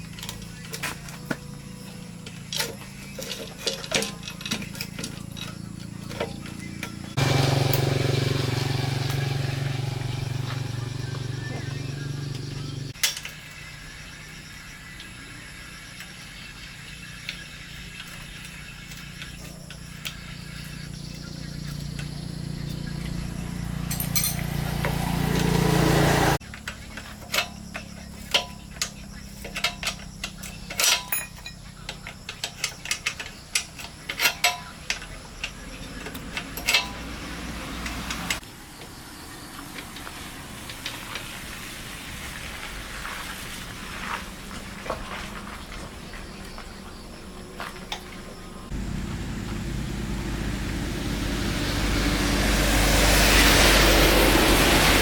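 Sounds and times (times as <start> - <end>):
sharp metallic clicks and clinks: 11.7 - 13.5, 23.8 - 25.6, 26.4 - 38.5
low mechanical hum: 44.0 - 55.0.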